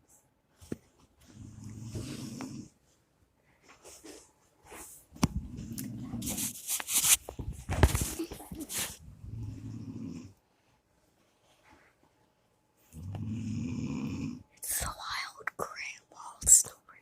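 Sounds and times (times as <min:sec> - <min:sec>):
woman snoring loudly: 0:13.0 - 0:14.4.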